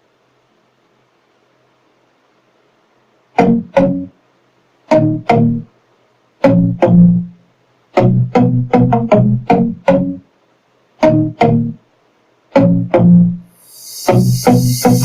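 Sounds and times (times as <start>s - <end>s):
plucked instrumental music: 3.4s - 4.1s, 4.9s - 5.7s, 6.4s - 7.3s, 8.0s - 10.2s, 11.0s - 11.8s, 12.6s - 13.4s, 14.0s - 15.0s.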